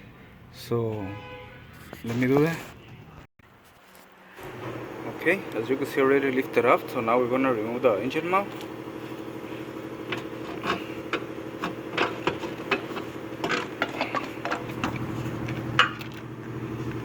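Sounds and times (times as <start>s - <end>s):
steady hum: 4.4s - 17.0s.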